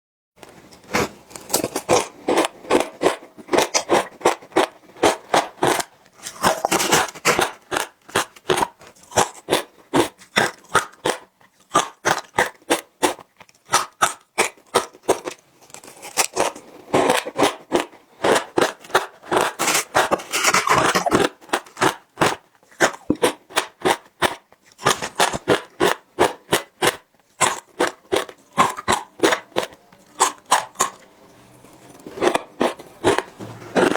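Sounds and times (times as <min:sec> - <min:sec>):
ice crunching while chewing: 0:00.7 - 0:33.9.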